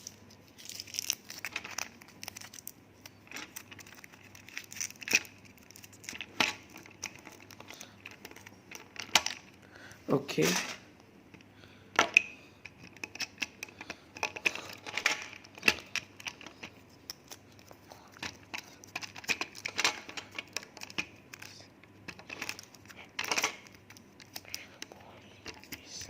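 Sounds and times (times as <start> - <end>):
hands clicking on plastic toy parts: 11.4 - 26.0.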